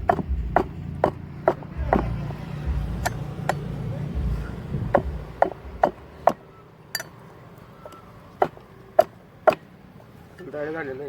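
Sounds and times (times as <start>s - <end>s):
low rumble: 0.0s - 6.2s
tools knocking on metal: 0.0s - 7.1s, 7.8s - 10.1s.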